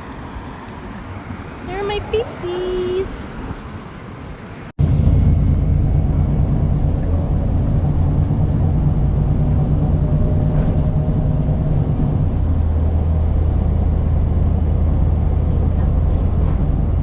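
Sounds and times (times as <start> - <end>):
bus engine humming: 0.0 - 17.0.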